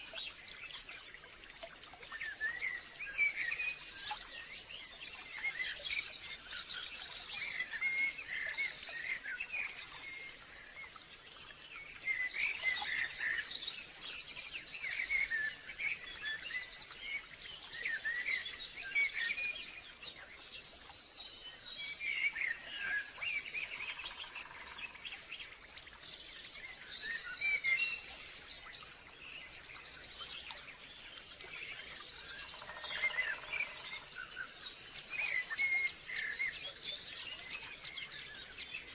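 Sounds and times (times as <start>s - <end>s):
birds chirping and trilling: 26.6s - 38.9s.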